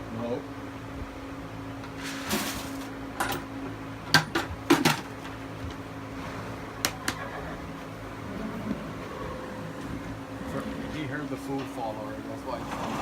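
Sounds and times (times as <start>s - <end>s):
steady low hum: 0.0s - 13.0s
scoop and bucket clattering: 1.9s - 3.4s.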